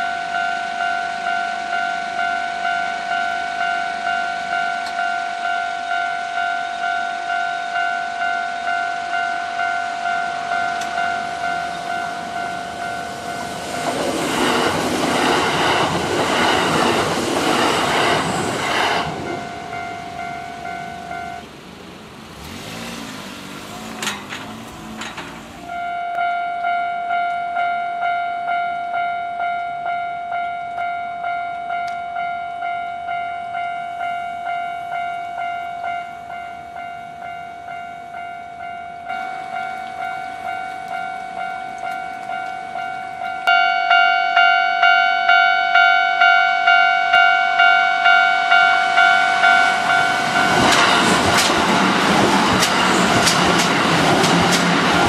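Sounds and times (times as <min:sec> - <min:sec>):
level crossing bell ringing: 0:00.0 - 0:14.0, 0:17.6 - 0:21.5, 0:25.7 - 0:51.2
electric train passing: 0:00.0 - 0:55.0.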